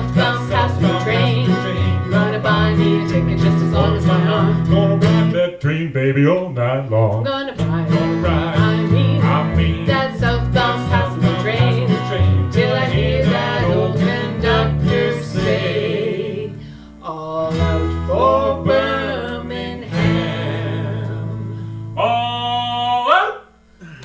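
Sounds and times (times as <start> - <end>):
country band playing: 0.0 - 5.3, 7.6 - 16.5, 17.6 - 21.4
guitar picked notes: 0.0 - 5.4, 7.6 - 16.9
steady bass: 0.0 - 5.8, 7.6 - 16.8, 17.5 - 22.9.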